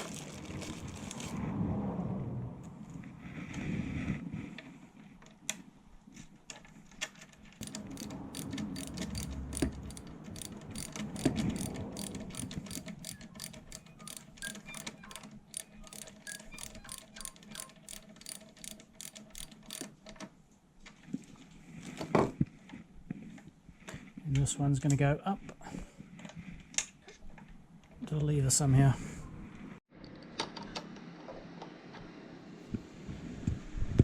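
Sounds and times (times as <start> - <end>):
socket ratchet clicking: 7.6 - 20.0.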